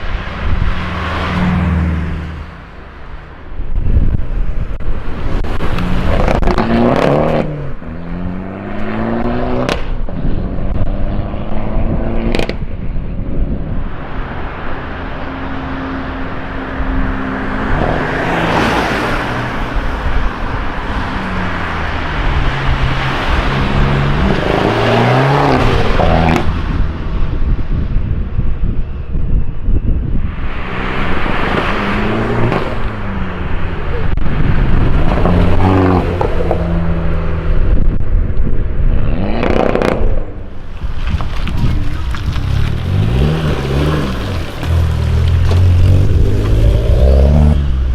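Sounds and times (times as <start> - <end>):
car engine revving: 5.4 - 12.6, 14.9 - 26.8, 39.0 - 40.5, 41.5 - 47.9
exhaust cracks: 39.3 - 47.9.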